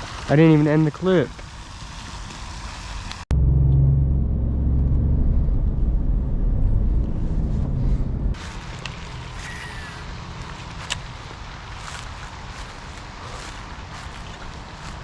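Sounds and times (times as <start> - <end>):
car engine and road rumble: 3.3 - 15.0.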